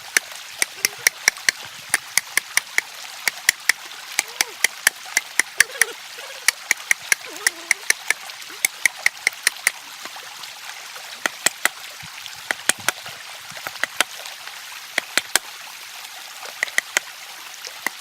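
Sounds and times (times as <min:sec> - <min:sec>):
stream running: 0:00.0 - 0:18.0
sharp irregular clicks: 0:00.1 - 0:09.8, 0:15.0 - 0:15.4, 0:16.5 - 0:17.1.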